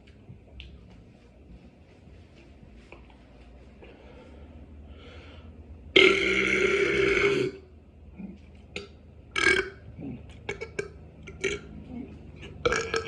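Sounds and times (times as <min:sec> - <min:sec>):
person burping: 0:06.0 - 0:07.7, 0:08.8 - 0:11.8, 0:12.4 - 0:13.0.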